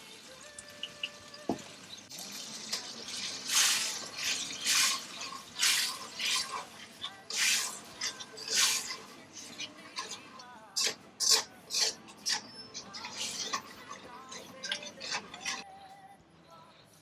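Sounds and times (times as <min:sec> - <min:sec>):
tap water splashing in sink: 0:01.0 - 0:05.0.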